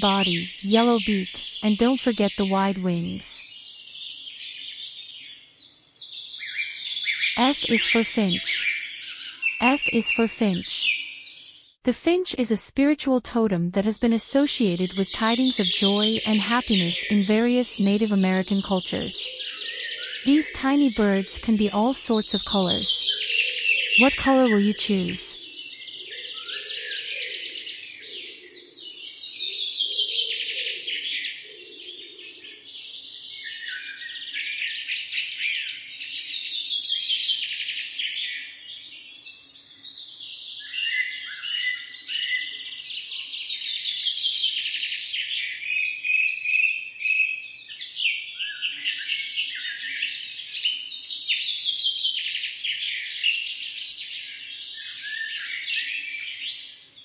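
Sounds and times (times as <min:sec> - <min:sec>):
songbirds chirping: 0:00.0 - 0:11.6.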